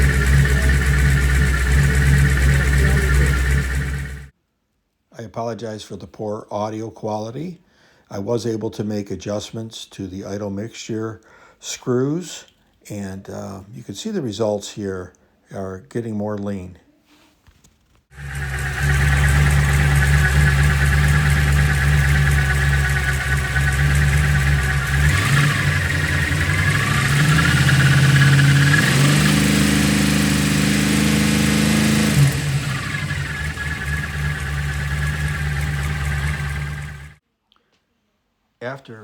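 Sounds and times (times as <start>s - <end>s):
car engine idling and revving: 0.0s - 4.3s, 18.1s - 37.2s.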